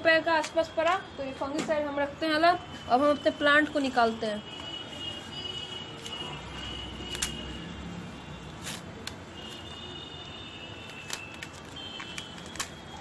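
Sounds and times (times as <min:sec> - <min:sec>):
packaging crackling: 0:07.0 - 0:07.4, 0:10.8 - 0:13.0.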